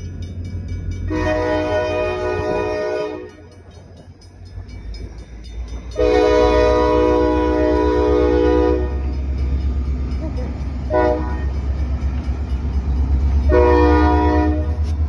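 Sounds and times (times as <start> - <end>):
locomotive air horn: 1.1 - 3.5, 6.0 - 9.1, 10.9 - 11.5, 13.5 - 15.0.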